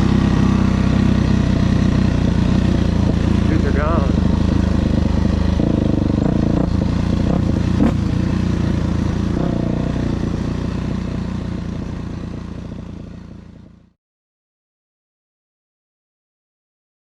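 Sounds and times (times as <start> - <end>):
dirt bike engine running: 0.0 - 13.9.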